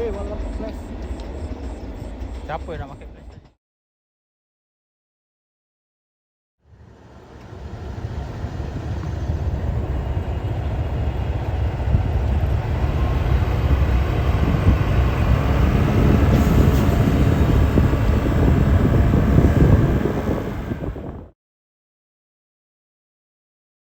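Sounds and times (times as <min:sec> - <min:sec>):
diesel train rumbling: 0:00.0 - 0:03.6, 0:06.7 - 0:21.3.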